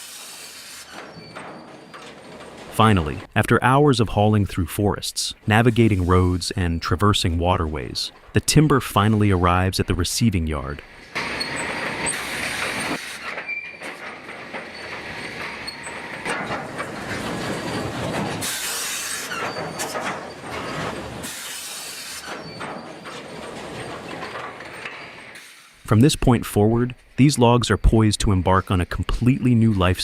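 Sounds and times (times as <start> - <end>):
hissing bursts: 0.0 - 1.1, 18.4 - 19.4
heavy machinery rumble and clatter: 0.9 - 3.4, 6.9 - 25.8.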